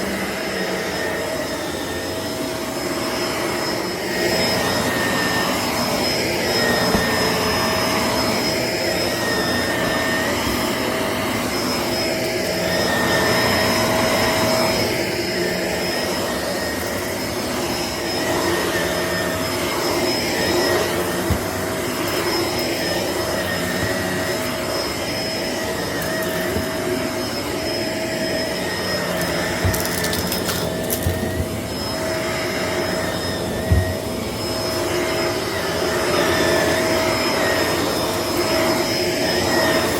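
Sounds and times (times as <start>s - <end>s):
vacuum cleaner motor whine: 0.0s - 39.9s.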